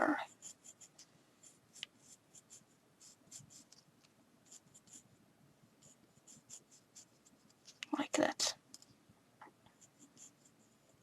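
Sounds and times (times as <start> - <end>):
pencil scratching on paper: 0.0 - 3.8, 4.4 - 5.1, 5.8 - 7.8, 9.7 - 11.0.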